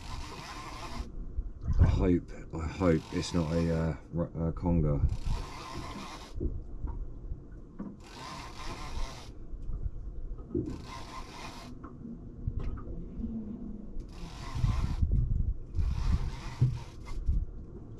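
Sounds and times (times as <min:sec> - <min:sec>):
fishing reel rasping: 0:00.0 - 0:01.1, 0:02.7 - 0:03.7, 0:05.1 - 0:06.4, 0:08.0 - 0:09.4, 0:10.7 - 0:11.8, 0:14.0 - 0:15.1, 0:15.8 - 0:17.2
low knocks and rubbing: 0:07.8 - 0:17.5.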